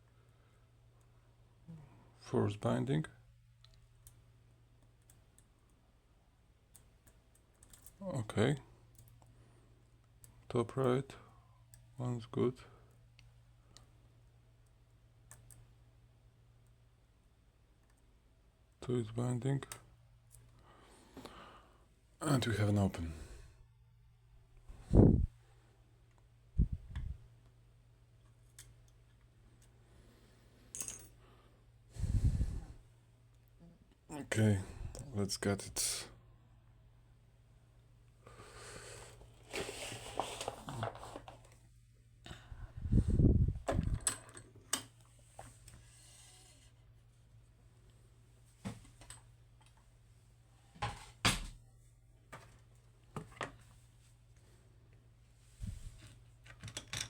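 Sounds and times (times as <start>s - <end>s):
faint steady hum: 0.0s - 57.0s
scraping rustle: 39.4s - 41.5s.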